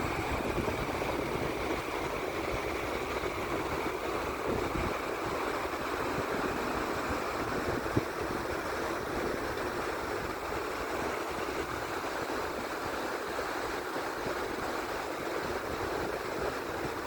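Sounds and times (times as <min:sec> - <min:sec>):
waterfall rushing: 0:00.0 - 0:13.3.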